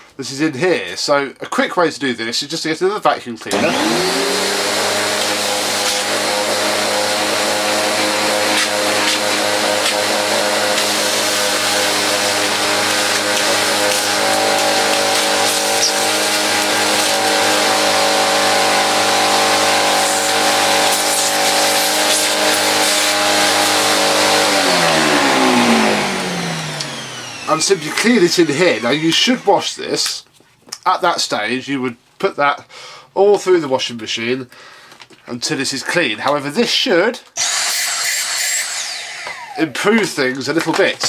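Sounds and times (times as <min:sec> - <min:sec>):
vacuum cleaner running: 0:03.5 - 0:29.7, 0:37.4 - 0:39.9.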